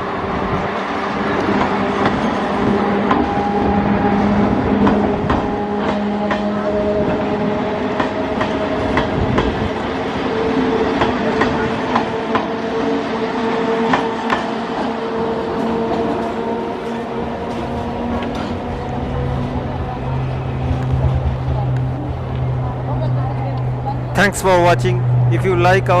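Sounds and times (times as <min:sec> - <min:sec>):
train wheels clattering on rails: 0:01.3 - 0:10.0, 0:10.8 - 0:12.7, 0:13.8 - 0:19.8.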